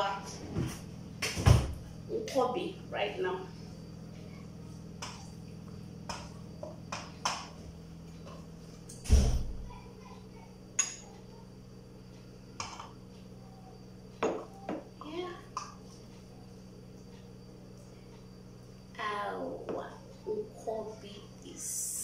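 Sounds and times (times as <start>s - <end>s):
steady low hum: 0.0s - 22.0s
heavy thud: 9.0s - 9.6s.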